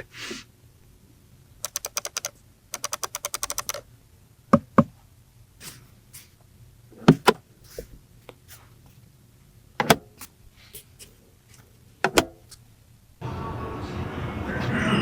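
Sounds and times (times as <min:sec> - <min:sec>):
sharp mechanical clicks and clunks: 0:01.6 - 0:03.8.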